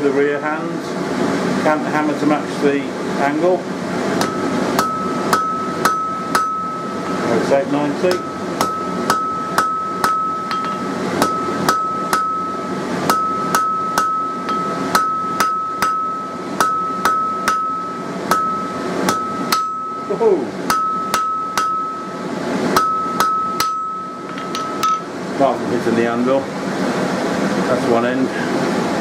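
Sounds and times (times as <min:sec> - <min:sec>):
hammer striking steel on anvil: 0:04.2 - 0:06.8, 0:08.0 - 0:22.0, 0:22.7 - 0:25.1
high ring from anvil: 0:04.2 - 0:07.3, 0:08.1 - 0:22.1, 0:22.8 - 0:25.1.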